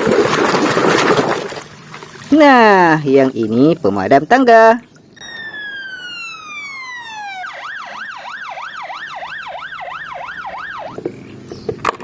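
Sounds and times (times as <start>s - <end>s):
toy siren yelping: 5.2s - 11.0s.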